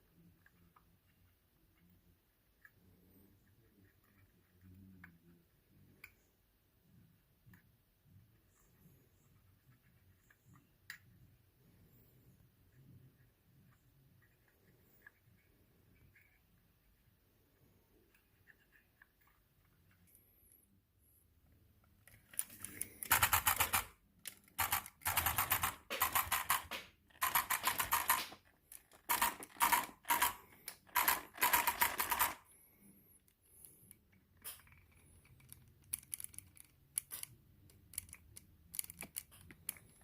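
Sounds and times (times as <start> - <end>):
differential gears clicking rapidly: 23.0 - 23.9, 24.6 - 28.4, 29.0 - 32.4.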